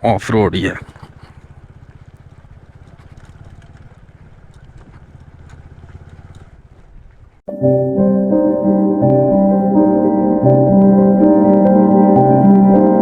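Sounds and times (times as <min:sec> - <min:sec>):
motorcycle engine idling: 0:00.0 - 0:07.4.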